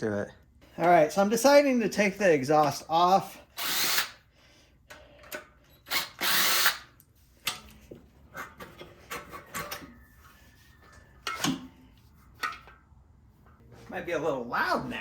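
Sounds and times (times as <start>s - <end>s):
power drill bursts: 3.6s - 4.2s, 5.8s - 6.9s.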